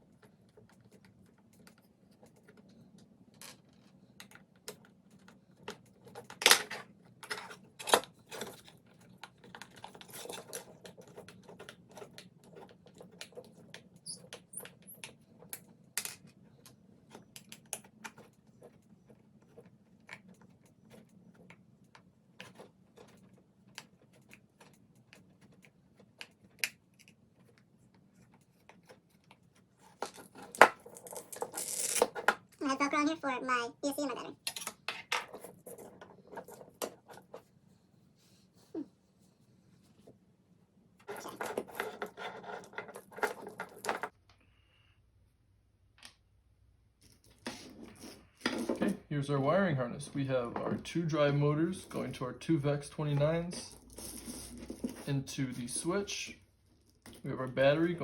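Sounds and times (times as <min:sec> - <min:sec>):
hand tools and small parts clattering: 0:00.1 - 0:32.7, 0:34.4 - 0:37.6, 0:41.0 - 0:44.2, 0:50.0 - 0:52.3, 0:52.9 - 0:58.0.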